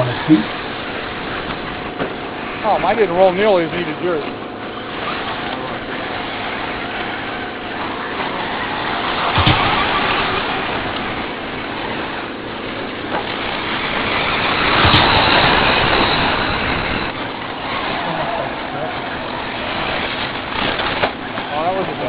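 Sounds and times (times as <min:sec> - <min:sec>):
rc truck motors racing: 0:00.0 - 0:22.0
sharp knocks: 0:09.3 - 0:10.3.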